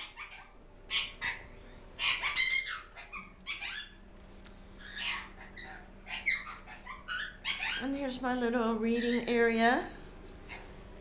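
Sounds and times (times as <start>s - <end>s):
parrots squawking: 0.0s - 4.0s, 4.7s - 8.0s, 8.9s - 9.4s, 10.4s - 10.8s.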